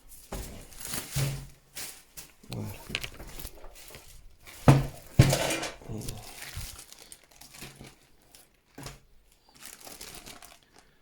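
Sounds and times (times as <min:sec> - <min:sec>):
packaging crinkling and rustling: 0:00.0 - 0:11.0
packaging knocks: 0:02.4 - 0:08.0.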